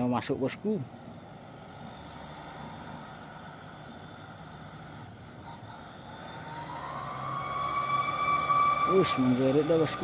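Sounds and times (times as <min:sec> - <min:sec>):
rising whine: 0:00.0 - 0:10.0
truck diesel engine climbing: 0:00.0 - 0:10.0.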